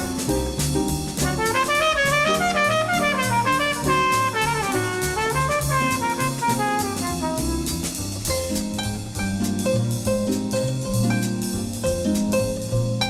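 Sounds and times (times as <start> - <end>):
saxophone melody: 0.0 - 8.3
drum kit: 0.0 - 13.0
walking bass: 0.0 - 13.0.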